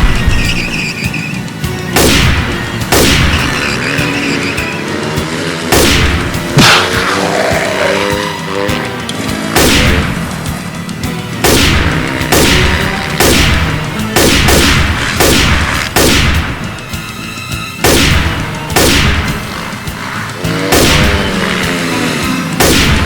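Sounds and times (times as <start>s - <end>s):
background music: 0.0s - 23.0s
gunshots with ringing tail: 1.9s - 4.1s, 5.5s - 8.1s, 9.4s - 17.0s, 17.8s - 23.0s.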